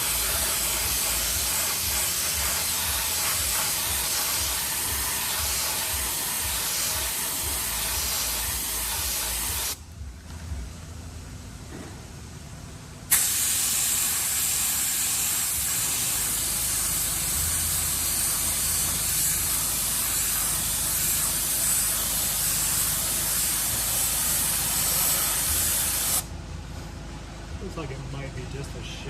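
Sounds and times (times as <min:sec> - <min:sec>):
paint spray hissing: 0:00.0 - 0:09.8, 0:13.1 - 0:26.3.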